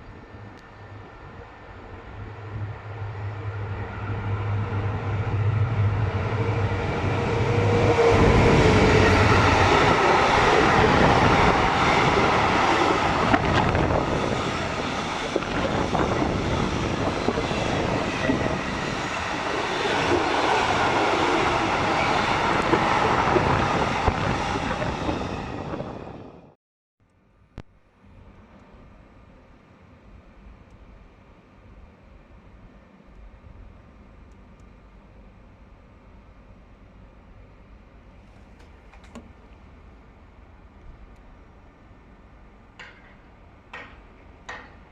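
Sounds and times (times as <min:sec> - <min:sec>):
train engine hum: 0:00.0 - 0:26.6, 0:27.9 - 0:44.9
train wheels rushing on rail: 0:00.4 - 0:26.3.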